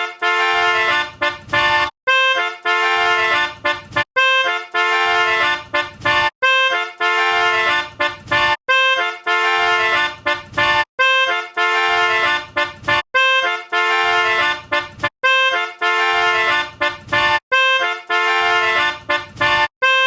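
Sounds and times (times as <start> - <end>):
buzzy instrument melody: 0.0 - 20.0.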